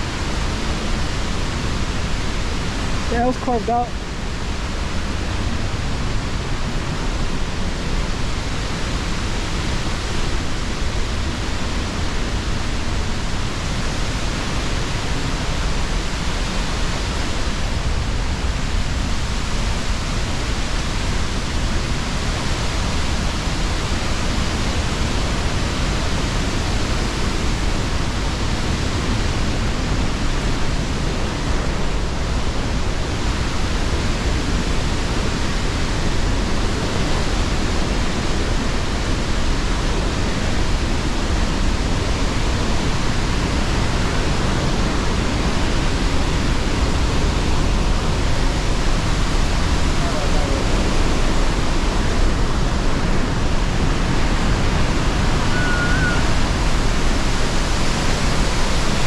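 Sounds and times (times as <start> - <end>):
waterfall roaring: 0.0 - 59.0.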